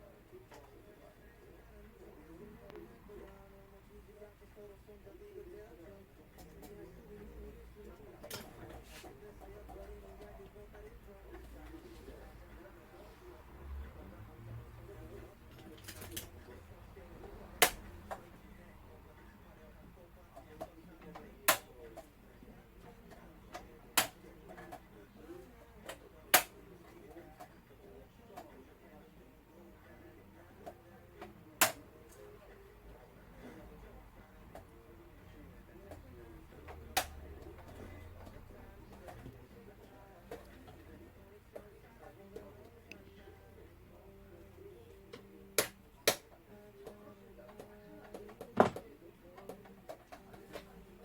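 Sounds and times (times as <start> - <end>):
faint steady hum: 0.0 - 51.0.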